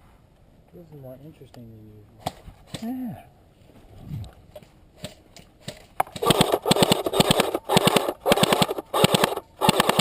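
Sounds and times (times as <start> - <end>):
airsoft gun firing bursts: 5.6 - 10.0.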